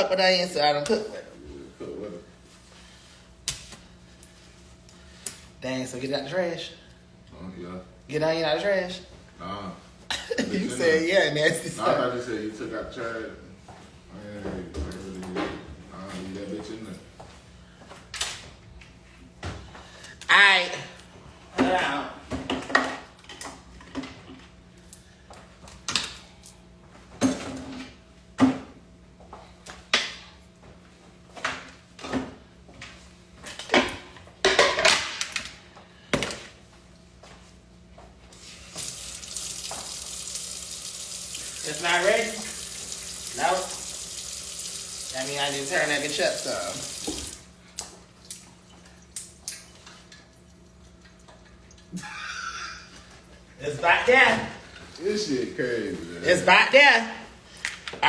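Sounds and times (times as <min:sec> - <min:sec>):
kitchenware clicks and taps: 0:33.6 - 0:35.4.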